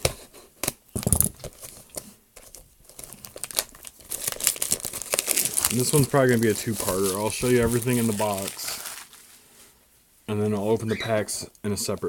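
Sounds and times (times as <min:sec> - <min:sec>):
plastic wrapping crinkling and tearing: 0:00.6 - 0:09.4.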